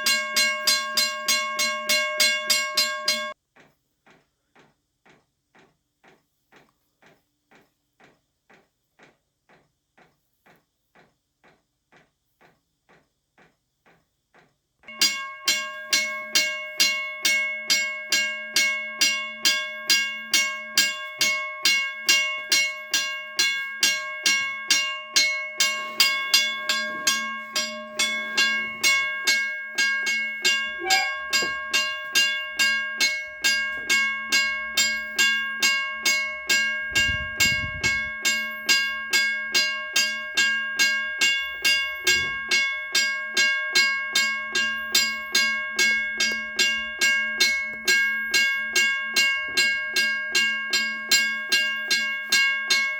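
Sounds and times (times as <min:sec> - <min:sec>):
mechanical crossing bell ringing: 0:00.0 - 0:03.4, 0:14.9 - 0:52.9.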